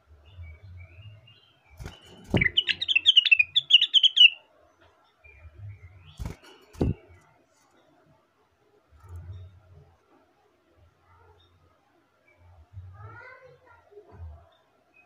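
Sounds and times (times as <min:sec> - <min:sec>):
bird twittering song: 0:00.0 - 0:07.3.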